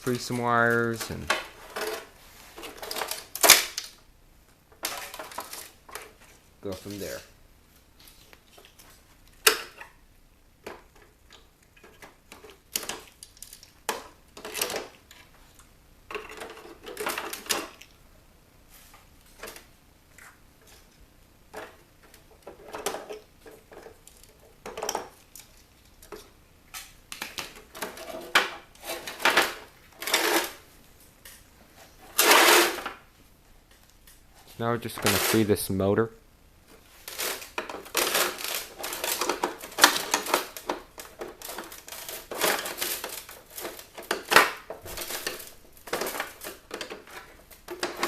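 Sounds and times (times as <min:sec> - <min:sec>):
plastic and metal parts clattering: 0:00.1 - 0:04.0, 0:04.7 - 0:07.2, 0:11.8 - 0:15.4, 0:16.1 - 0:17.8, 0:21.5 - 0:30.6, 0:32.0 - 0:33.1, 0:36.7 - 0:48.0
scraping: 0:20.2 - 0:30.6, 0:31.7 - 0:33.1, 0:34.4 - 0:35.7.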